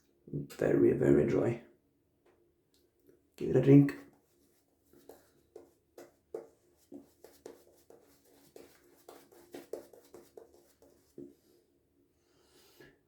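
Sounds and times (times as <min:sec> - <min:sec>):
shaving brush swishing lather: 0:04.4 - 0:11.4.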